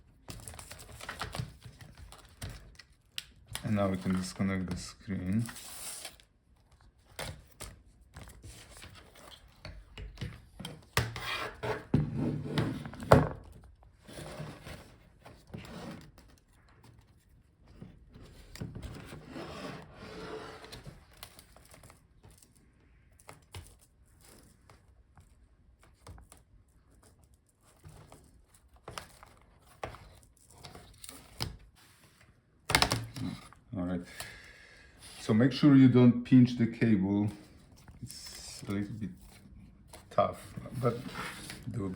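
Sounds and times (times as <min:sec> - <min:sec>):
plastic and metal scraping: 0:37.3 - 0:41.9.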